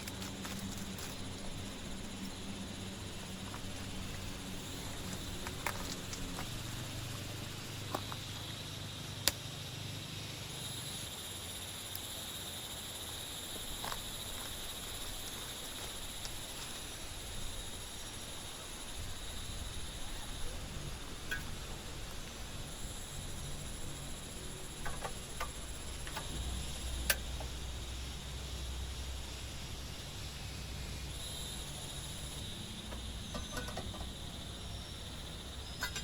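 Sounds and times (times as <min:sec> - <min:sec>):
steady rain hiss: 0:00.0 - 0:33.2
low background hum: 0:00.0 - 0:36.0.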